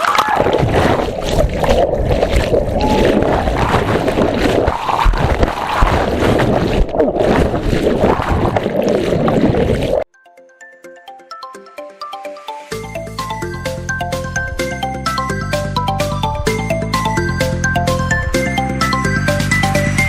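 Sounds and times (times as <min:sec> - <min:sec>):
motorboat running: 0:00.4 - 0:10.0
wind rumble on microphone: 0:00.4 - 0:10.0.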